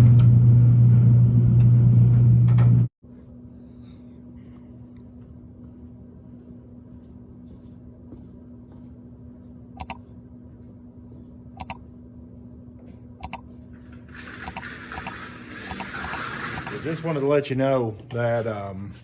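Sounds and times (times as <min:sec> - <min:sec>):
steady low hum: 0:00.0 - 0:16.9
sharp double clicks: 0:09.8 - 0:10.0.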